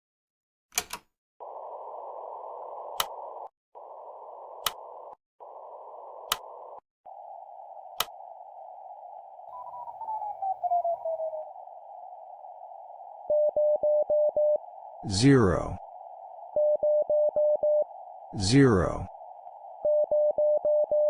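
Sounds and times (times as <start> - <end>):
radio static hiss: 1.4 - 21.0
sharp clicks: 4.6 - 4.9, 6.2 - 6.5, 7.9 - 8.2.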